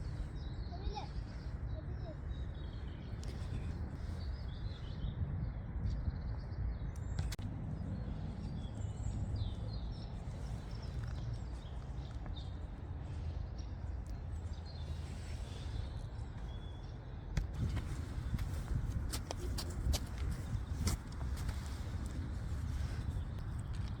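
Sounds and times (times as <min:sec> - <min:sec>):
small birds chirping: 0:00.0 - 0:24.0
steady low rumble: 0:00.0 - 0:24.0.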